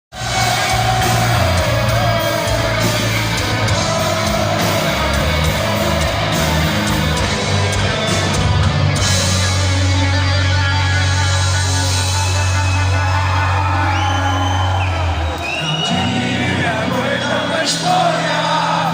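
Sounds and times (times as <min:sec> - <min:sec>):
bass notes: 0:00.1 - 0:18.9
distorted electric guitar: 0:00.1 - 0:18.9.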